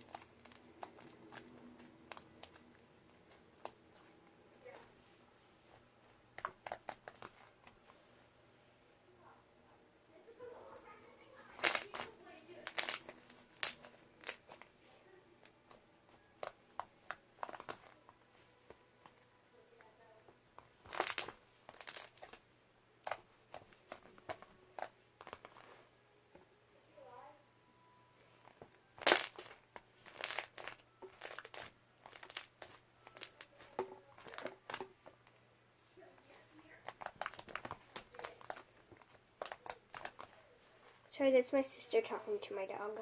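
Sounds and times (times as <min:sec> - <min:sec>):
slime crackling and popping: 0:00.0 - 0:04.9, 0:06.0 - 0:07.8, 0:11.5 - 0:14.7, 0:15.4 - 0:19.2, 0:20.6 - 0:25.8, 0:28.3 - 0:35.4, 0:36.4 - 0:41.0.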